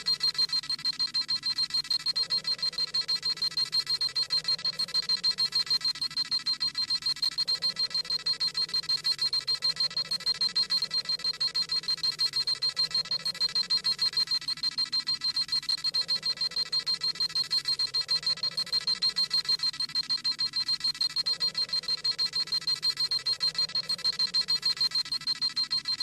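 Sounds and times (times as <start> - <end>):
rapid electronic beeping: 0.0 - 26.0.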